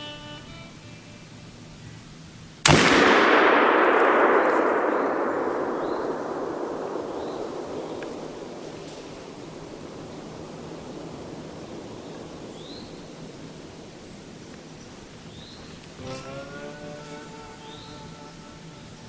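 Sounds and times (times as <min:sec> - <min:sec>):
revolver shot with rolling echo: 0:02.7 - 0:15.9.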